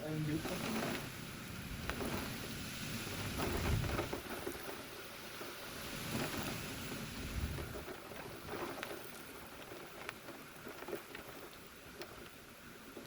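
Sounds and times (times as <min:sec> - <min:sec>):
heavy rain: 0:00.0 - 0:07.9
wind: 0:00.0 - 0:13.0.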